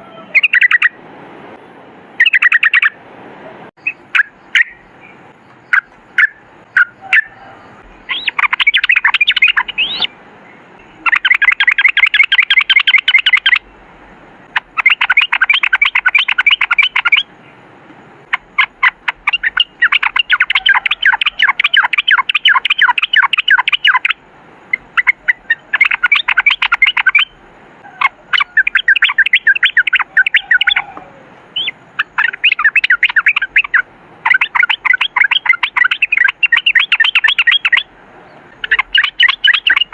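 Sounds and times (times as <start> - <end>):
bulbul singing rolling song: 0.0 - 39.9
single bird calls: 3.8 - 13.8, 18.3 - 39.9.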